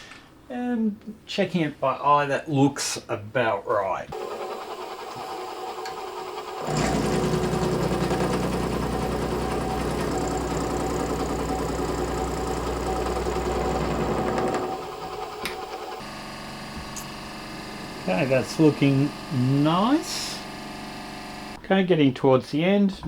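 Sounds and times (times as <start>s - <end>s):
milling machine cutting metal: 4.2s - 21.6s
spindle running: 4.2s - 21.6s.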